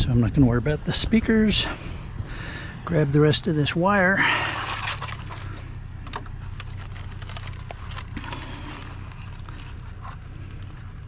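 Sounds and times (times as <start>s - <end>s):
truck engine idling: 0.0s - 11.0s
clicks and knocks of scrap parts: 4.4s - 10.4s.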